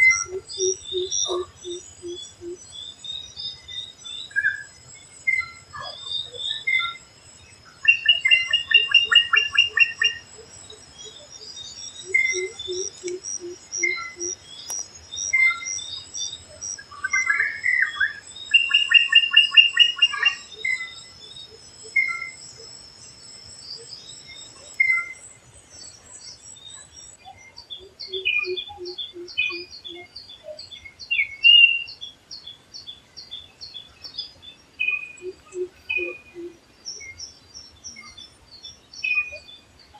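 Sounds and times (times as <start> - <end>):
birds chirping and singing: 0.0 - 22.7, 25.8 - 39.9
bird trilling: 12.1 - 14.3.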